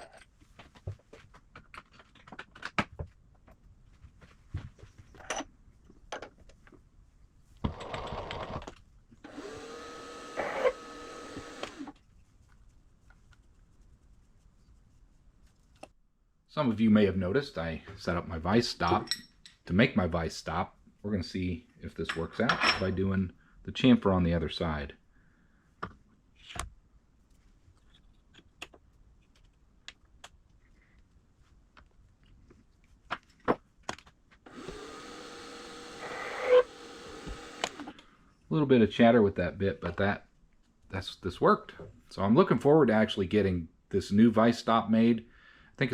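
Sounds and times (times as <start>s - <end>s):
small electric motor running: 9.3s - 11.9s, 34.5s - 37.9s.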